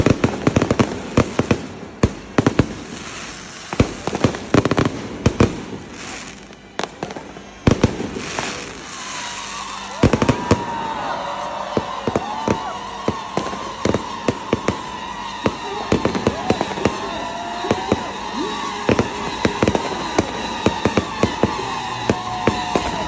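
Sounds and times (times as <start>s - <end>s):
fireworks bangs and crackles: 0.0s - 23.0s
wavering whistle: 7.1s - 23.0s.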